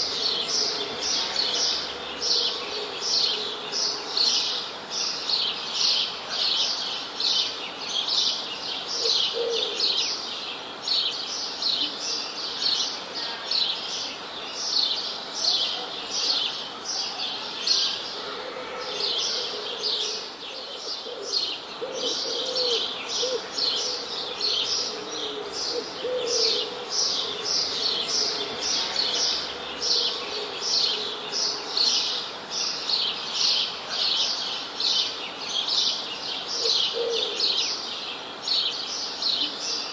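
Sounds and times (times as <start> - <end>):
songbirds chirping: 0.0 - 39.9
lower wavering bird calls: 17.2 - 32.1.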